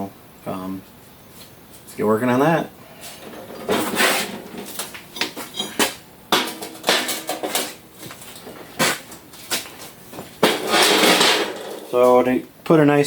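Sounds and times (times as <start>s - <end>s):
metallic clanks and knocks: 3.2s - 8.7s, 10.4s - 12.1s.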